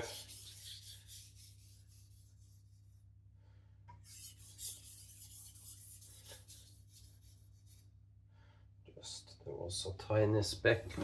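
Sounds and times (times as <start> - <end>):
knife scraping whetstone: 0.0 - 2.6, 4.1 - 7.8.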